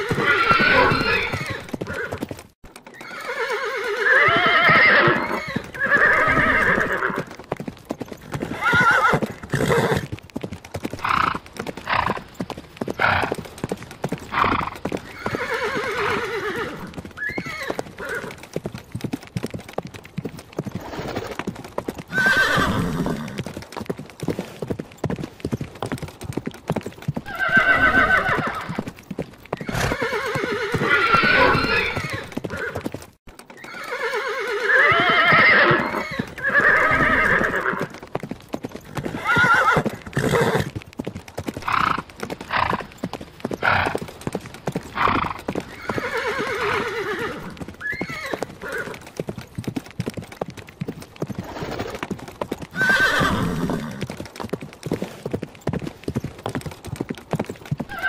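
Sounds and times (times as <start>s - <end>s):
horses whinnying: 0.0s - 10.2s, 10.8s - 18.6s, 20.6s - 23.6s, 27.1s - 40.8s, 41.5s - 49.1s, 51.2s - 52.0s, 52.6s - 54.2s, 57.8s - 58.0s
hooves clip-clopping: 0.0s - 58.0s.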